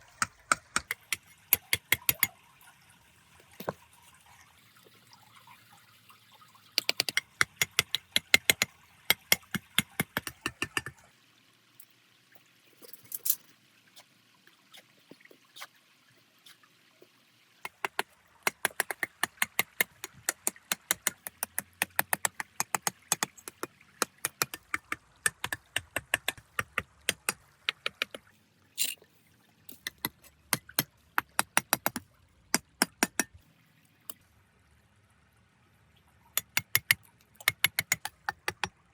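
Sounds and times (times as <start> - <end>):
rapid sharp taps: 6.8 - 11.0, 17.7 - 28.2.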